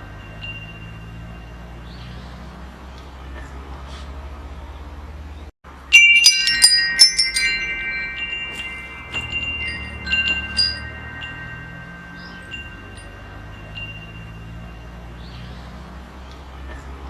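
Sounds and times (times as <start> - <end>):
metal wind chimes jangling: 0.0 - 2.0, 5.8 - 15.9.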